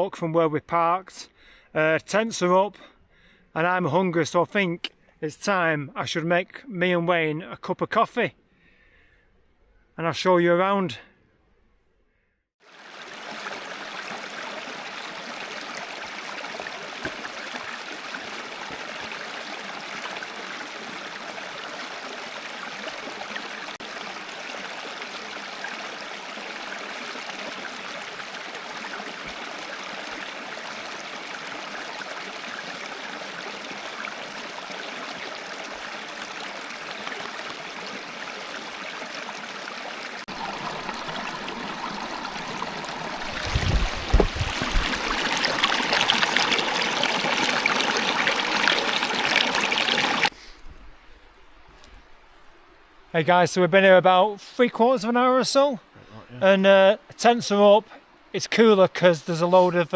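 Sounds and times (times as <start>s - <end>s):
brook running over stones: 12.6s - 50.3s.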